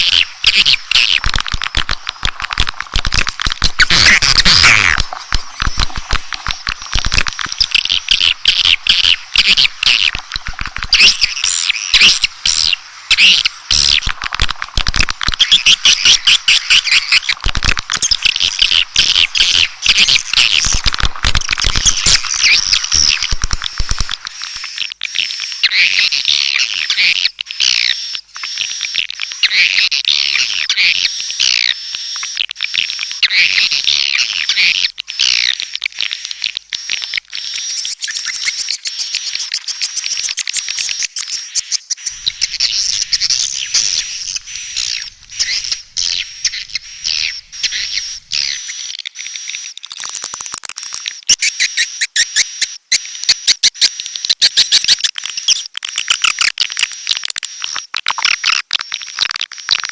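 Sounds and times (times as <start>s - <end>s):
sharp clicks: 0.0s - 12.1s
swiftlets twittering: 3.0s - 14.2s, 36.8s - 50.3s.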